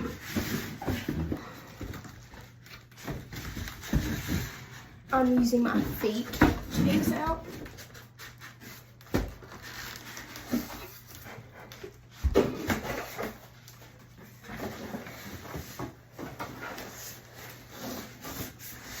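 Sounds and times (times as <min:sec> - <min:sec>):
cardboard and packing rubbing: 0:06.0 - 0:19.0.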